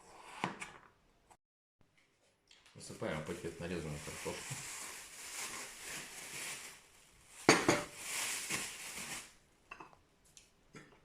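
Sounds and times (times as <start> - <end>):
potato slices rustling in plastic bag: 3.0 - 9.4.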